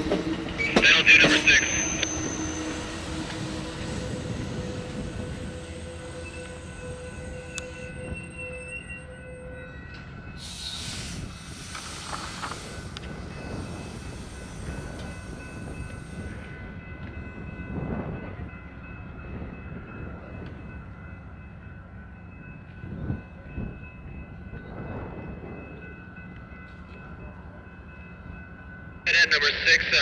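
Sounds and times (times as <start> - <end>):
air hiss: 10.4 - 13.0.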